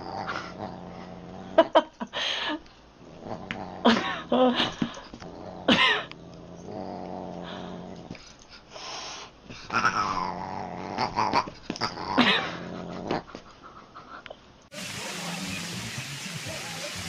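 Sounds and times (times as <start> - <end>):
animal growling low: 0.0 - 1.7, 3.0 - 4.3, 5.2 - 8.2, 9.7 - 13.2.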